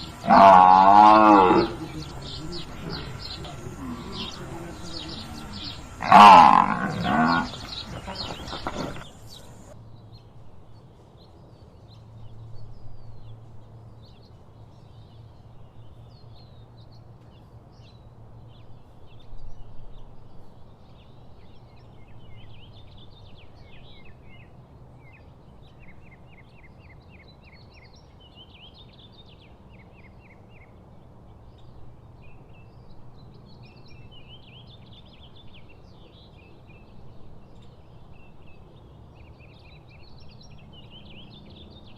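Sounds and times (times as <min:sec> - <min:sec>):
buffalo low call: 0:00.0 - 0:09.7.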